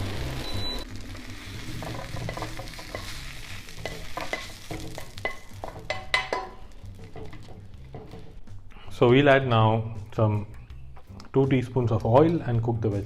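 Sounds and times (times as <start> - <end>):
hot oil sizzling: 0.0 - 8.4
spatula scraping a frying pan: 1.4 - 8.4.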